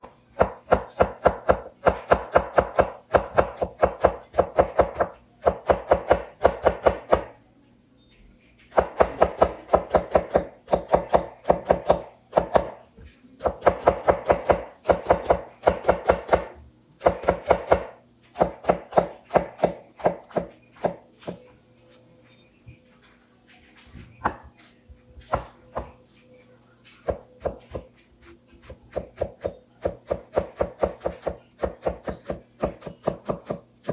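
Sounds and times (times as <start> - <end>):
knife chopping on cutting board: 0.3 - 7.3, 8.7 - 12.8, 13.4 - 21.4, 28.9 - 33.9.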